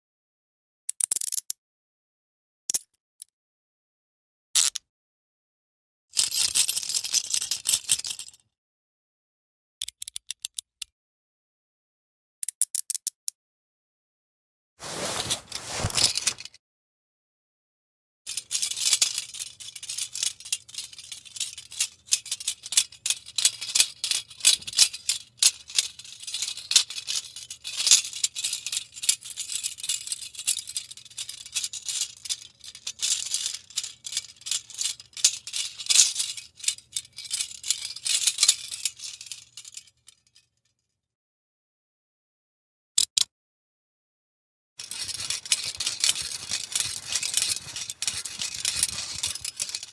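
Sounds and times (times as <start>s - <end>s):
chain rattling: 44.8s - 49.9s
handcuffs clicking: 44.9s - 49.9s.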